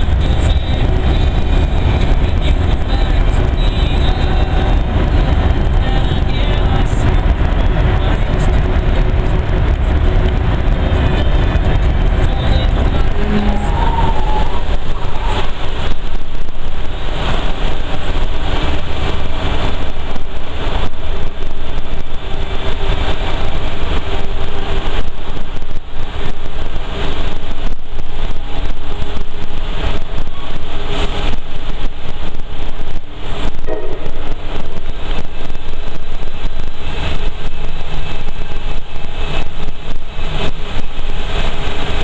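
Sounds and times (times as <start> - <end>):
vehicle rumbling through tunnel: 0.0 - 42.0.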